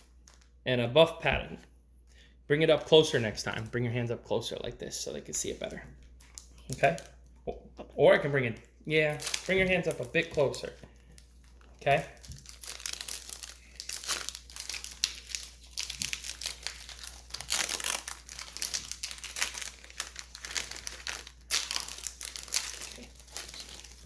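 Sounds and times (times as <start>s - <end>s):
wrappers crinkling and tearing: 0.0s - 0.6s, 5.4s - 7.2s, 8.2s - 24.0s.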